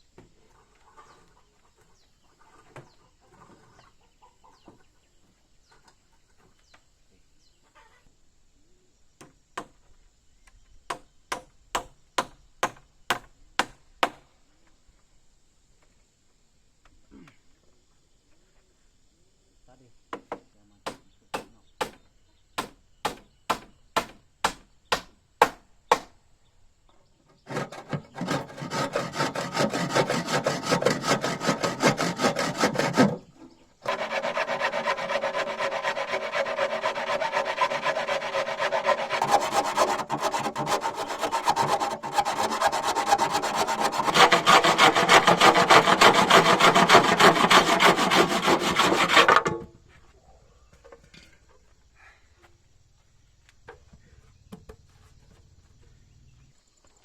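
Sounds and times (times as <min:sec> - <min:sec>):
tool rasping through wood: 0:27.5 - 0:49.6.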